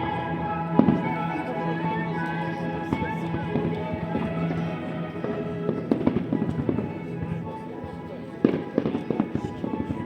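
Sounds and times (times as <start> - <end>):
music playing: 0.0 - 10.0.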